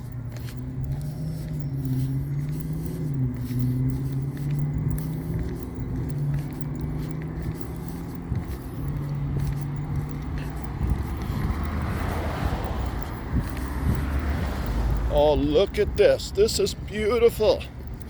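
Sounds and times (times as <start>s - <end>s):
slow road traffic hum: 0.0s - 18.0s.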